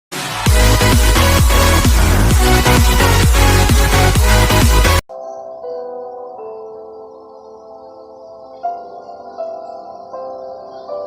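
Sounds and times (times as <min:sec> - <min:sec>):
electronic dance music: 0:00.1 - 0:05.1
soft music with ringing tones: 0:05.1 - 0:11.0.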